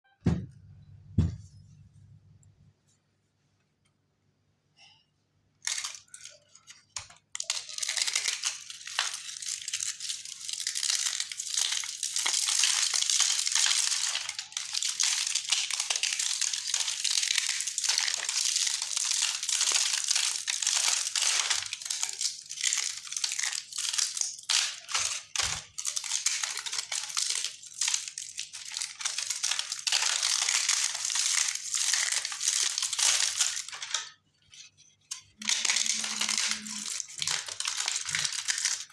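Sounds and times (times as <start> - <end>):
clay crushed with crackling crunch: 5.6 - 38.9.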